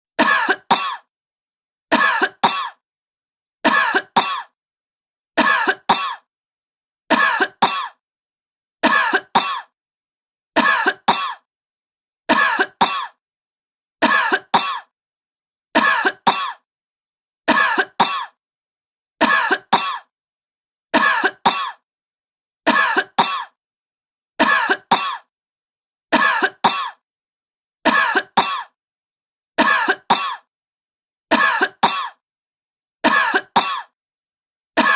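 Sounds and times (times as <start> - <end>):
woman coughing: 0.2 - 1.1, 1.9 - 2.8, 3.7 - 4.6, 5.4 - 6.3, 7.1 - 8.0, 8.8 - 9.8, 10.6 - 11.5, 12.3 - 13.2, 14.0 - 14.9, 15.8 - 16.6, 17.5 - 18.4, 19.2 - 20.1, 21.0 - 21.8, 22.7 - 23.6, 24.4 - 25.3, 26.2 - 27.0, 27.9 - 28.8, 29.6 - 30.5, 31.3 - 32.2, 33.1 - 34.0.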